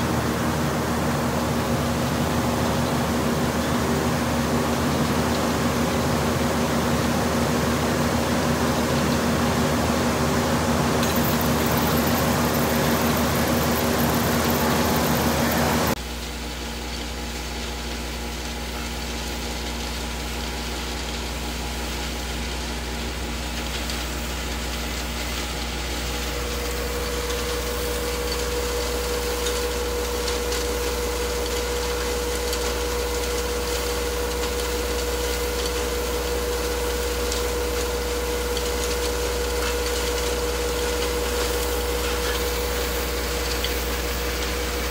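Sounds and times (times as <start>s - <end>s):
sawmill machinery running: 0.0s - 44.9s
steady whine: 10.6s - 16.0s.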